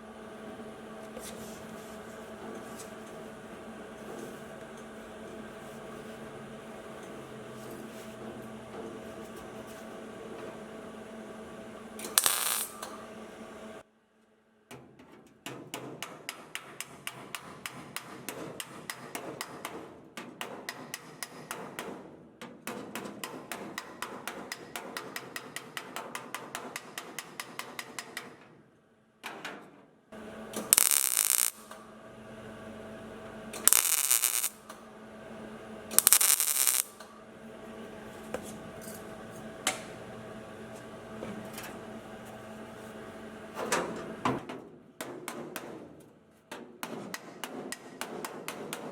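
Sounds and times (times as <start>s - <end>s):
steady low hum: 0.0s - 13.8s, 30.2s - 44.3s
loud hissing bursts: 30.6s - 31.6s, 33.6s - 34.6s, 35.9s - 37.0s.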